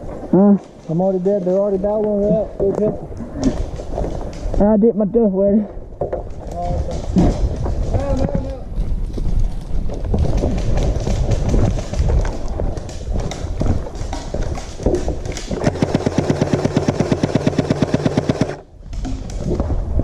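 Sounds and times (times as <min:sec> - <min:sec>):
clatter and knocking: 0:05.6 - 0:08.5, 0:09.1 - 0:19.7
airsoft gun full-auto burst: 0:15.6 - 0:18.6
motor and gearbox hum: 0:15.6 - 0:18.6.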